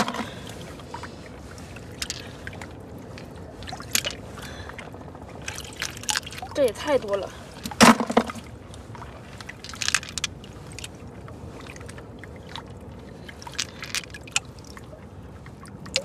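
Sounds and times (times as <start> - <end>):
snail shells clicking and scraping: 9.5 - 10.9.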